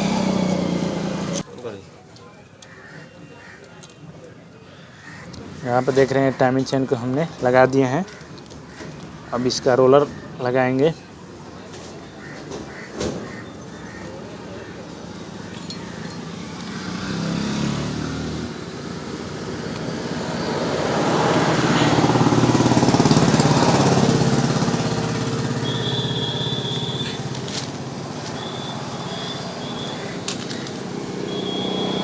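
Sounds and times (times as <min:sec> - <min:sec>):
vehicle engine passing by: 0:00.0 - 0:01.4, 0:14.6 - 0:32.0
sharp metal clinks: 0:15.6 - 0:16.7.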